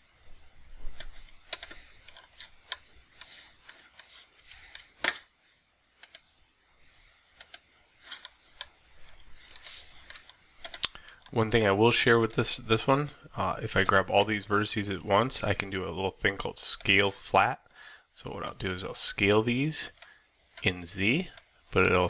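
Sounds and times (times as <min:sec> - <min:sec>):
keyboard and mouse clicking: 0:01.0 - 0:01.8, 0:06.0 - 0:06.3, 0:07.4 - 0:07.7, 0:09.6 - 0:11.2.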